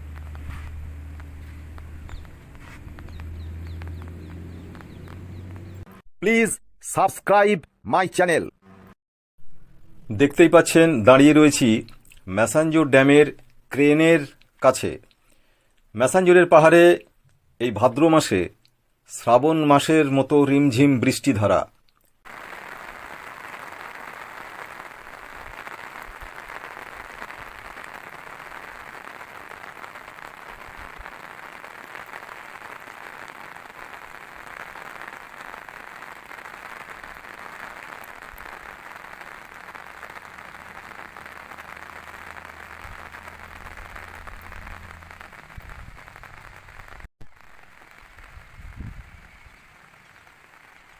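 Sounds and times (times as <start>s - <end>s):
light rain pattering: 0.0s - 6.0s, 22.2s - 50.9s.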